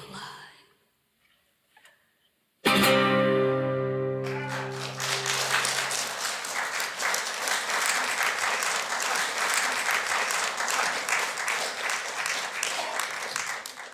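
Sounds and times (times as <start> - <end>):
guitar chord ringing: 2.6 - 5.5
audience applauding: 4.1 - 13.9.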